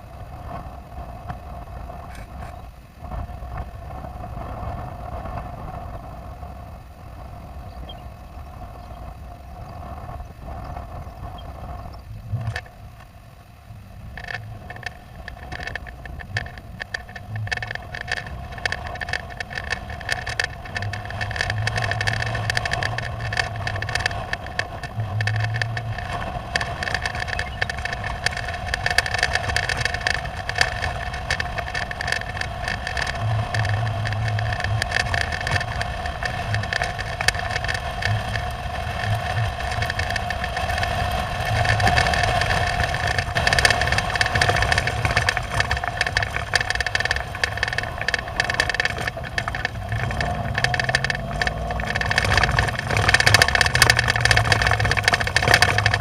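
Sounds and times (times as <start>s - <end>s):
steady hum: 0.0s - 56.0s
storm wind buffeting: 13.8s - 56.0s.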